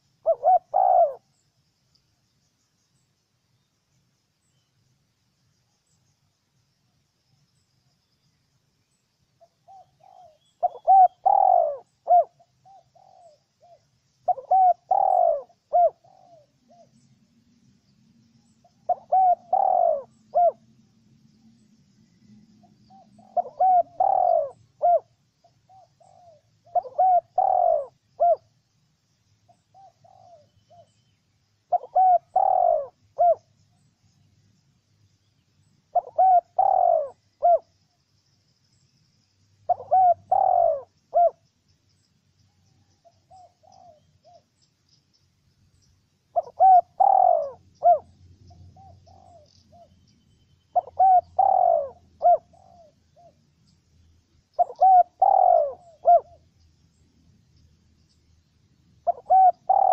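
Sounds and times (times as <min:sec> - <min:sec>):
dove cooing: 0:00.0 - 0:01.3, 0:09.4 - 0:17.0, 0:18.6 - 0:20.7, 0:22.2 - 0:28.5, 0:29.7 - 0:31.0, 0:31.7 - 0:33.5, 0:35.9 - 0:37.7, 0:39.7 - 0:41.4, 0:43.0 - 0:44.5, 0:46.3 - 0:50.0, 0:50.8 - 0:53.4, 0:54.5 - 0:56.5, 0:59.0 - 0:59.9.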